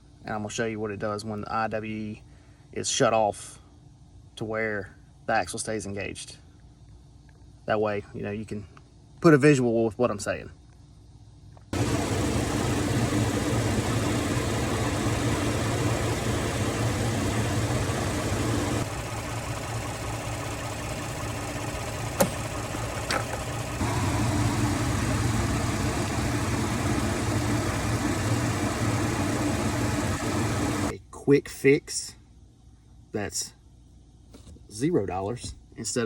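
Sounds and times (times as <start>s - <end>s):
pickup engine idling: 11.8s - 30.9s.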